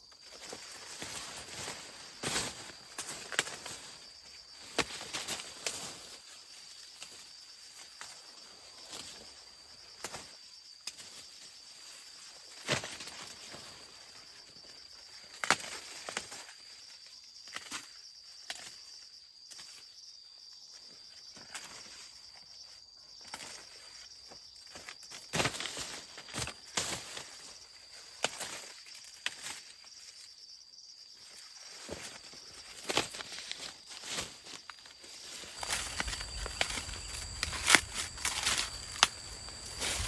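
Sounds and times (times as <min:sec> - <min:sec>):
rustling: 0:34.0 - 0:40.0.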